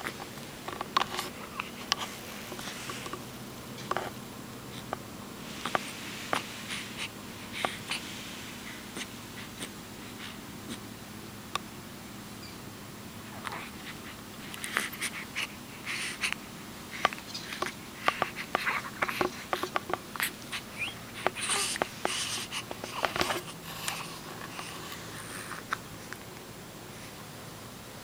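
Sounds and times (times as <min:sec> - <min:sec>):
pet sneezing and snuffling: 0:13.6 - 0:26.1.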